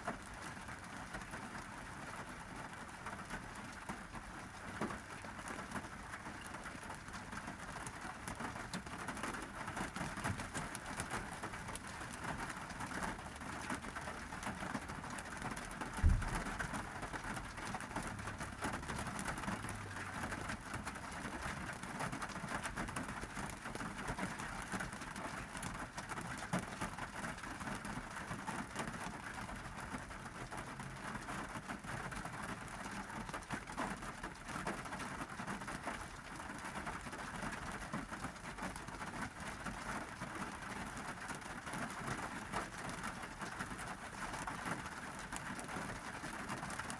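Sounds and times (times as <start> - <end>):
rain on car roof: 0.0 - 46.9
low thump: 16.0 - 16.5.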